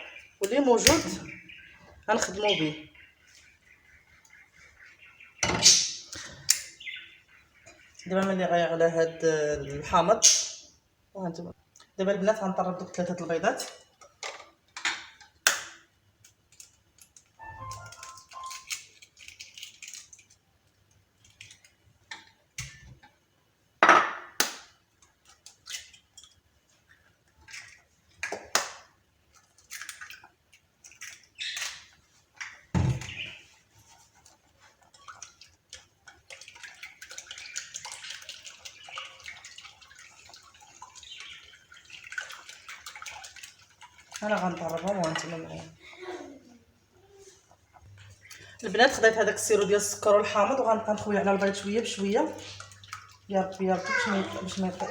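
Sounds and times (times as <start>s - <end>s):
eggs cracking into a bowl: 14.2s - 20.4s, 23.8s - 26.4s, 27.6s - 32.7s
utensils clinking against bowls: 17.4s - 19.3s.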